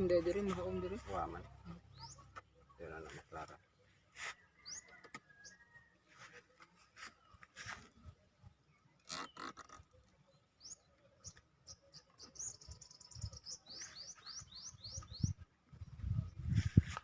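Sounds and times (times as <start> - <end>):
small songbird singing: 1.1 - 2.7, 4.6 - 5.8, 10.2 - 16.8.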